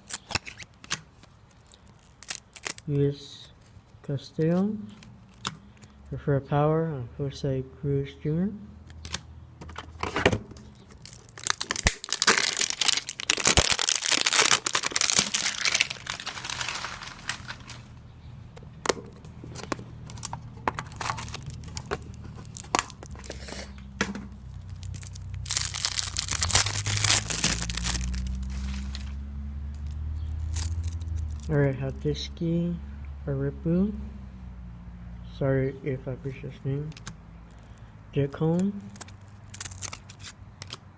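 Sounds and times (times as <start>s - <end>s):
wrapper crinkling: 0.0s - 2.9s, 10.6s - 18.0s, 19.3s - 29.2s, 29.8s - 31.6s, 38.6s - 40.3s
clicks and rustles: 8.9s - 31.6s, 38.5s - 40.9s.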